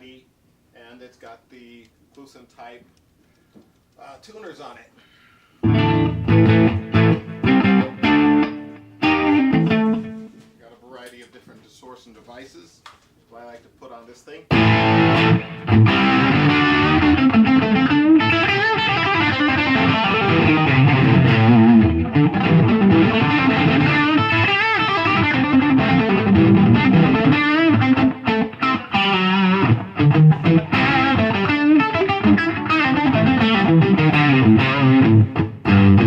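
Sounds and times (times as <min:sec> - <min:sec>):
distorted electric guitar lead: 0:05.6 - 0:10.4, 0:14.5 - 0:36.0.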